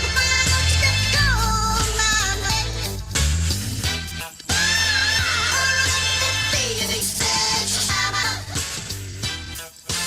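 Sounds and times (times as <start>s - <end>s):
funk soul song with bass line: 0.0s - 10.0s.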